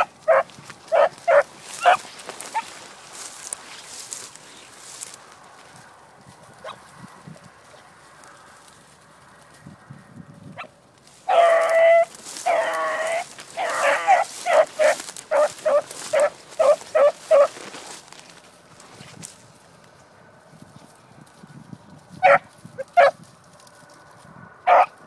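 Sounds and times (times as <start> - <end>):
dog barking: 0.0 - 2.7, 11.3 - 13.0, 13.6 - 17.6, 22.2 - 23.2, 24.7 - 25.0
dog drawn-out calls: 0.0 - 2.8, 6.6 - 6.9, 10.6 - 17.8, 22.2 - 23.2, 24.6 - 25.0.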